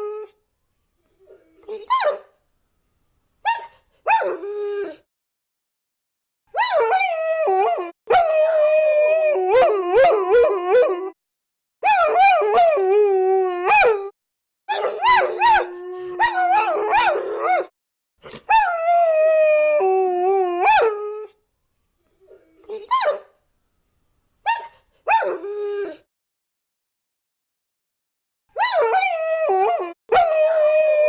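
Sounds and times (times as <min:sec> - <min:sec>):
dogs howling: 0:14.8 - 0:17.7.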